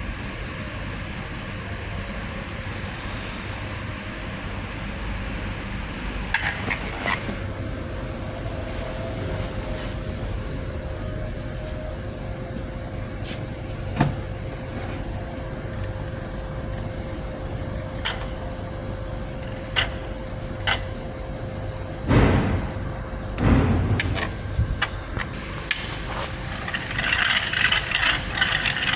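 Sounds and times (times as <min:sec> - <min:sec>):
electric motor hum: 0:06.0 - 0:26.3.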